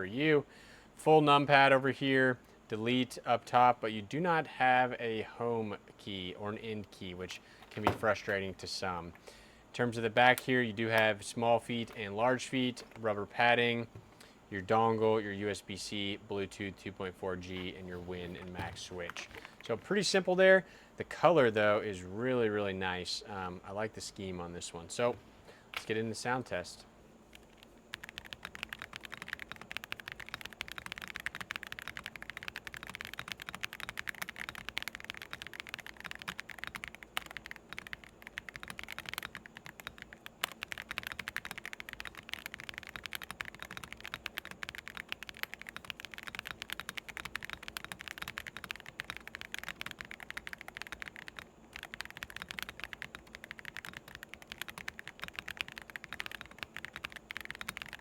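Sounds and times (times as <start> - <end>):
fast typing on mechanical keyboard: 27.3 - 58.0.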